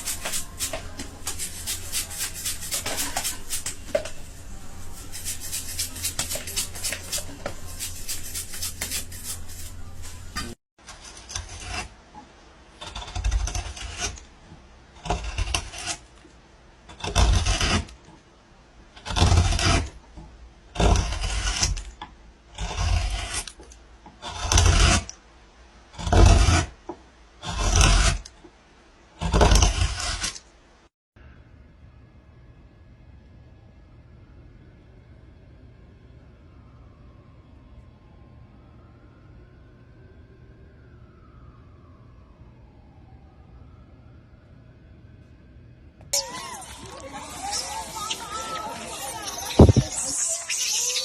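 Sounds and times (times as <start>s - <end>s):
rasping scraping strokes: 0.0s - 12.0s, 16.9s - 18.0s, 20.8s - 21.9s, 22.5s - 25.1s, 25.9s - 26.8s.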